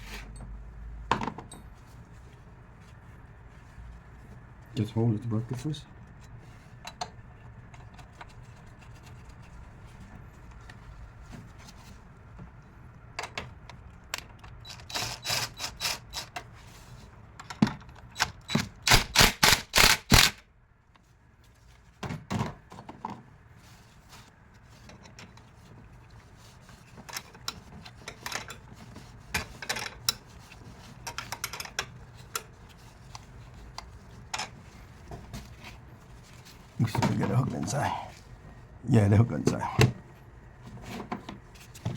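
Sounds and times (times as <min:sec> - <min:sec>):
loud quick clicks: 0:18.9 - 0:20.4.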